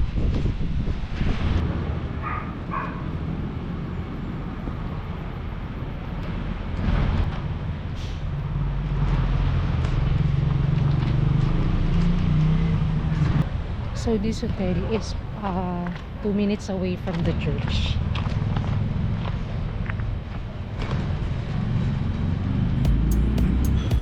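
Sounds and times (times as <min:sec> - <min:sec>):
engine and road rumble: 0:00.0 - 0:24.0
low hum: 0:21.3 - 0:24.0.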